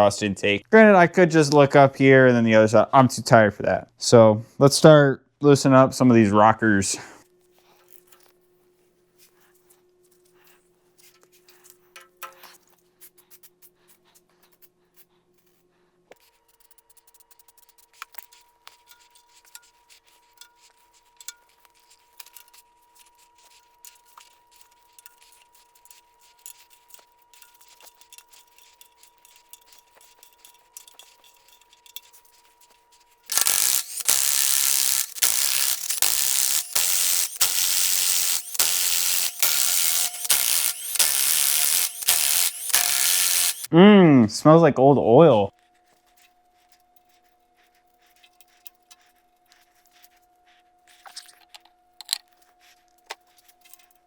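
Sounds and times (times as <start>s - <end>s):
metallic tool clicks and clinks: 33.3s - 43.7s
power ratchet spinning: 33.3s - 43.7s.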